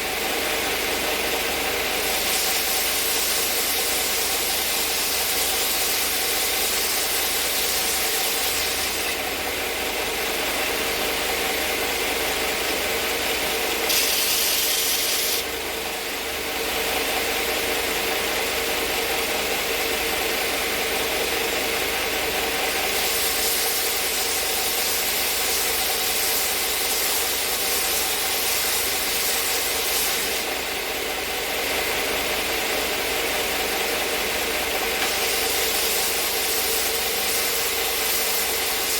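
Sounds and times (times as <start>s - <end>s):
wood rasping against sanding belt: 2.0s - 9.2s, 13.9s - 15.4s, 22.9s - 30.6s, 35.0s - 38.9s
belt sander motor humming: 22.2s - 38.9s.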